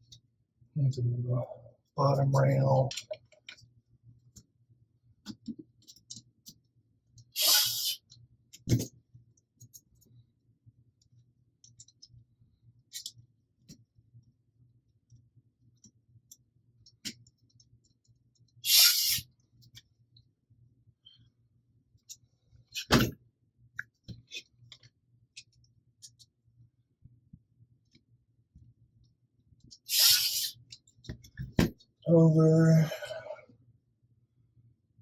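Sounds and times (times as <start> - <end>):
small parts clicking and tapping: 5.3 - 7.3, 11.0 - 12.2, 12.9 - 13.9.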